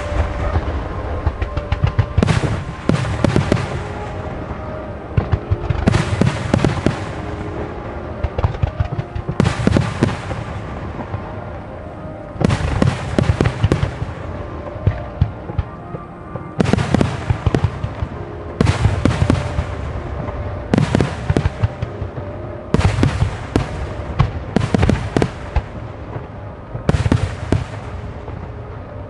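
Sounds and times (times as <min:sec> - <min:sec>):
firework shells booming: 0:00.0 - 0:04.2
crackling firework volleys: 0:00.0 - 0:29.0.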